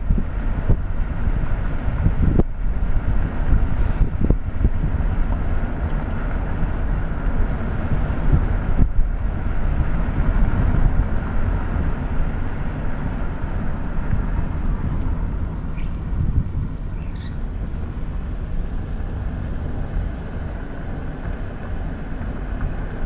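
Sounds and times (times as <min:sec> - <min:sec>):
car driving inside cabin: 0:00.0 - 0:23.0.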